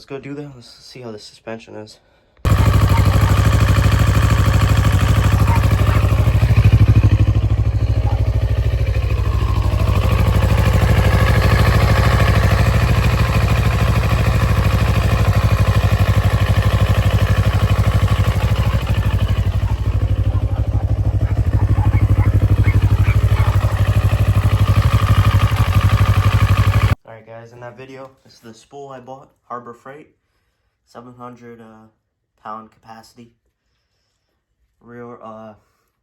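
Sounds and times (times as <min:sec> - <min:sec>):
motorcycle engine running: 0:02.5 - 0:27.0.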